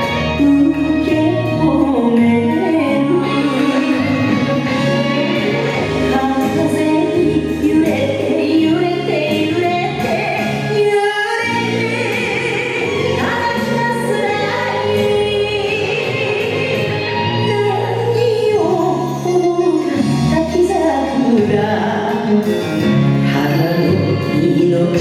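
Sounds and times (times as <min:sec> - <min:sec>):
woman singing over dance music: 0:00.0 - 0:25.0.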